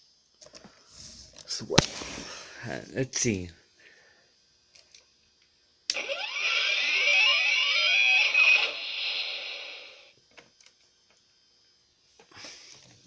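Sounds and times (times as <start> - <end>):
toy electronic gliding tones: 5.9 - 10.1.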